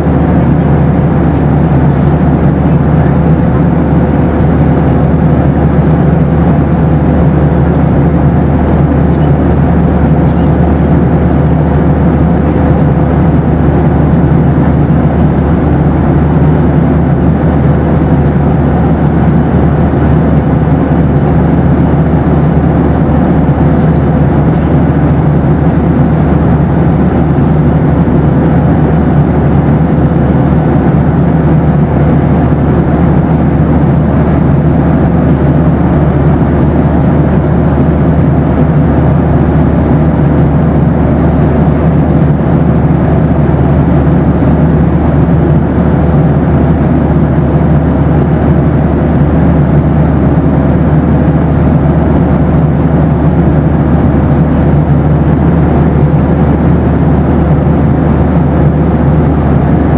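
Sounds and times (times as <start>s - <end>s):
airplane cabin engine rush: 0.0s - 59.9s.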